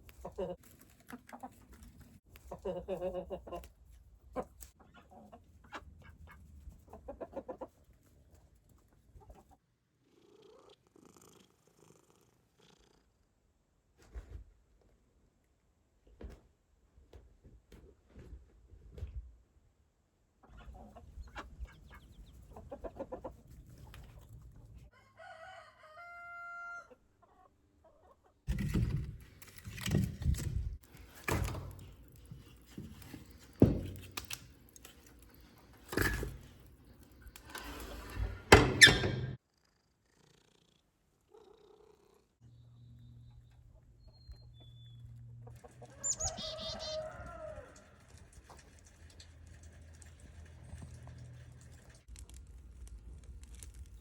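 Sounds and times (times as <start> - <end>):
chickens clucking: 0.0 - 7.9, 20.4 - 24.4, 43.6 - 47.4
rooster crowing: 24.9 - 26.9, 45.9 - 47.9.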